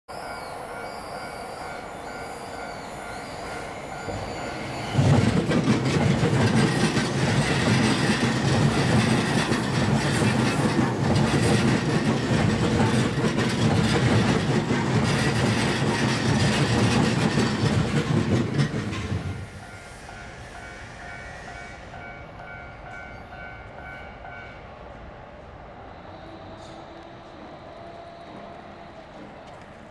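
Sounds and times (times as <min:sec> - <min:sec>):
crossing warning bell ringing: 0:00.1 - 0:10.6, 0:18.5 - 0:24.6
train passing: 0:00.1 - 0:29.9
wheels clattering over rail joints: 0:05.0 - 0:19.4.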